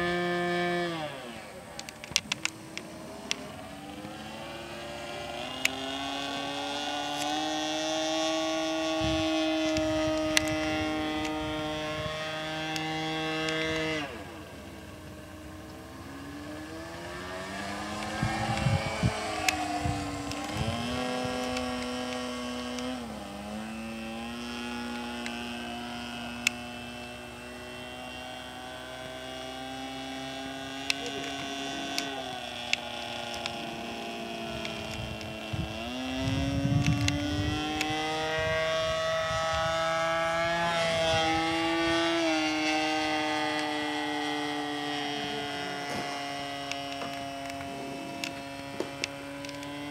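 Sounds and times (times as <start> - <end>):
model plane engine in flight: 0.0 - 49.9
sharp clicks: 1.7 - 4.2, 17.1 - 23.4, 24.4 - 26.8, 30.7 - 38.0, 45.9 - 49.9.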